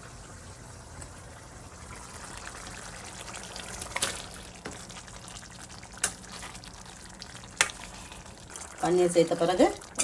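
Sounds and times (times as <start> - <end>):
gravy bubbling in a pan: 0.0 - 10.0.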